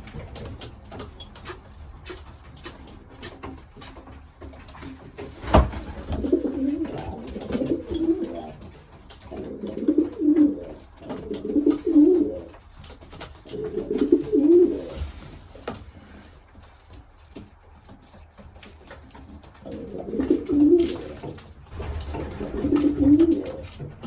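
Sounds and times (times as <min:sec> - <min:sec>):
pigeon cooing: 0:06.2 - 0:08.6, 0:09.4 - 0:12.5, 0:13.5 - 0:15.0, 0:19.7 - 0:21.3, 0:22.4 - 0:23.8.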